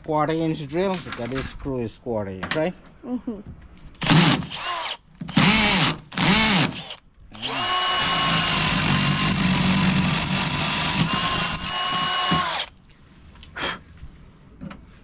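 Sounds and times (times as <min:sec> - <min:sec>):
power drill boring: 0:04.1 - 0:12.7.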